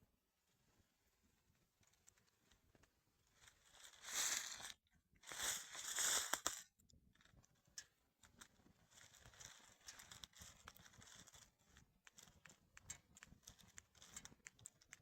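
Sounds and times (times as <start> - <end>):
rustling crinkling noise: 1.4 - 15.0.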